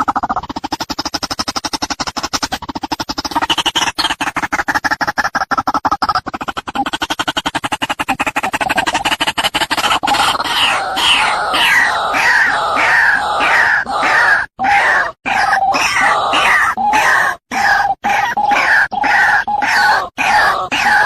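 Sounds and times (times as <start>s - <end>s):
bird calling harshly: 6.0s - 21.0s.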